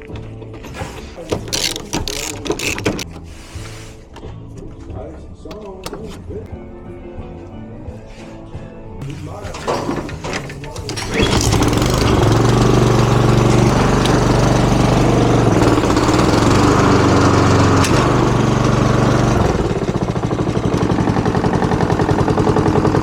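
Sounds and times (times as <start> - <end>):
lawn mower engine running: 9.0 - 23.0.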